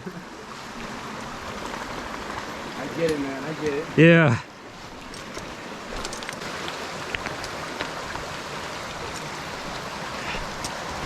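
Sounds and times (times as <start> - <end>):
creek water running: 0.0 - 11.0
footsteps on rocks: 4.8 - 8.3.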